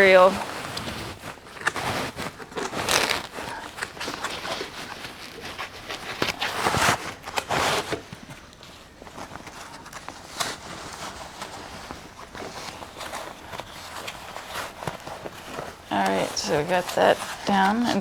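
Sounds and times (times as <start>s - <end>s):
costume fabric rustling: 0.0s - 18.0s.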